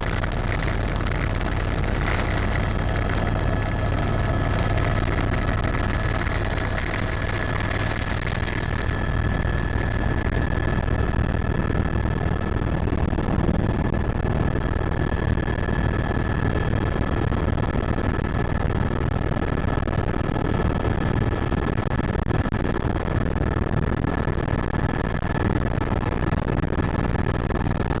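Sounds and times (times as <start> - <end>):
thin high whine: 0.0 - 12.7
helicopter drone: 0.0 - 21.8.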